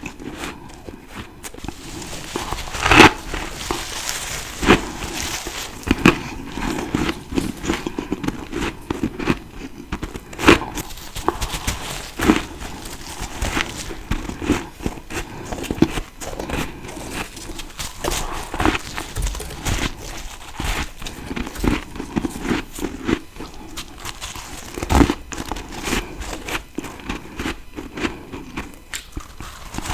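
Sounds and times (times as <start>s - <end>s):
crunchy chewing of frost: 0.0s - 29.9s.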